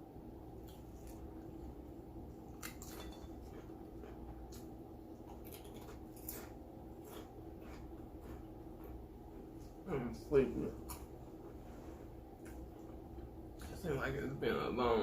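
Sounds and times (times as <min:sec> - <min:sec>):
mouth chewing sounds: 0:02.6 - 0:09.8.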